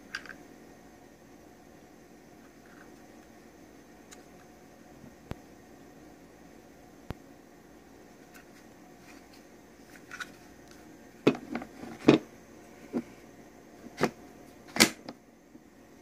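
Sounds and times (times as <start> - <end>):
hard objects knocking and clicking: 11.2 - 12.2.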